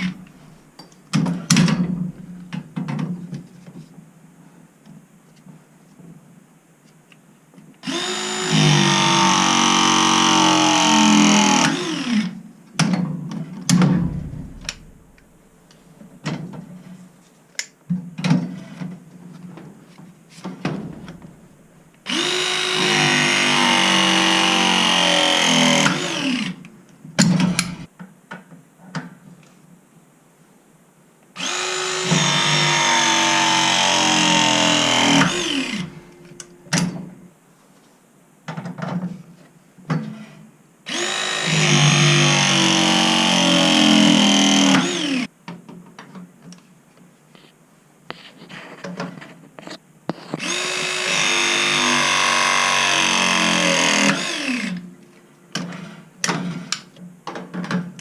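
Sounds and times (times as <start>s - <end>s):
pressing tool motor running: 7.8s - 12.1s, 22.1s - 26.3s, 31.4s - 36.2s, 40.9s - 45.3s, 50.4s - 54.6s.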